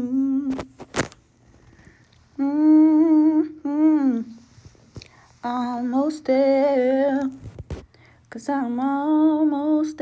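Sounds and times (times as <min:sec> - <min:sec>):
person humming: 0:00.0 - 0:00.7, 0:02.4 - 0:04.4.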